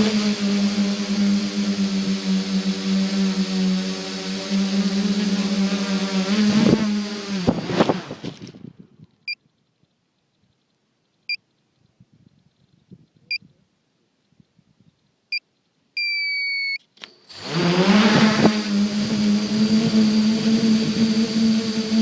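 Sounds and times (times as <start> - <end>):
electric motors and propellers: 0.0 - 8.8, 17.0 - 22.0
short electronic beeps: 15.3 - 16.8.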